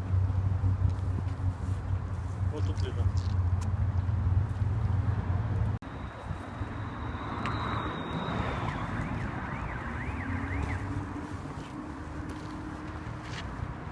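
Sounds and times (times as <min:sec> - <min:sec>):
city traffic noise: 0:00.0 - 0:13.9
electronic siren wailing: 0:05.9 - 0:11.2.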